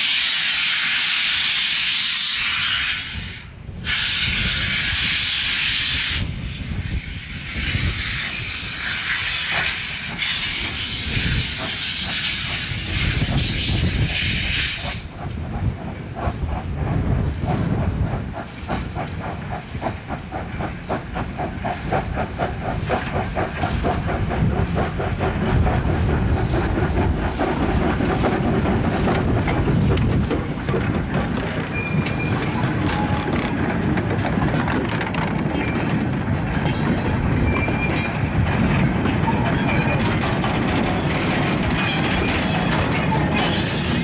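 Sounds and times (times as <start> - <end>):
steam hiss: 0.0 - 31.4, 41.6 - 44.0
steam locomotive beat: 0.0 - 44.0
train rumbling and clattering on track: 0.0 - 44.0.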